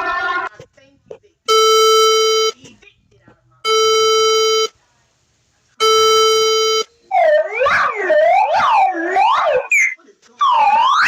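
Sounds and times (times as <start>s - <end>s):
harsh alert tone: 5.8s - 11.0s
wailing siren: 7.1s - 11.0s.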